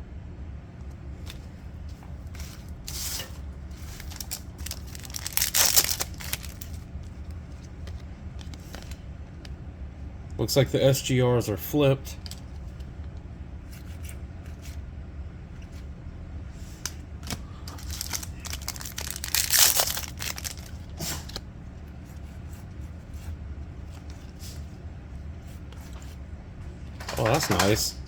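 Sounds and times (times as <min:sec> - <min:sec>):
steady low hum: 0:00.0 - 0:28.0
foil wrapper crinkling: 0:02.4 - 0:06.9, 0:17.2 - 0:21.4
foil pack ripping: 0:03.8 - 0:06.8, 0:17.6 - 0:21.4.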